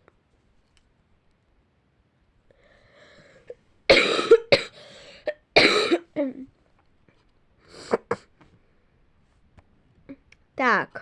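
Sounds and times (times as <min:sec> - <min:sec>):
girl coughing: 0:03.9 - 0:06.5, 0:07.8 - 0:08.3.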